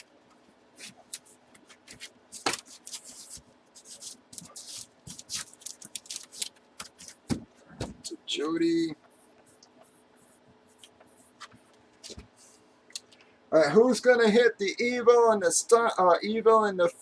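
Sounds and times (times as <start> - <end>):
cards rustling and clicking: 0.8 - 8.0.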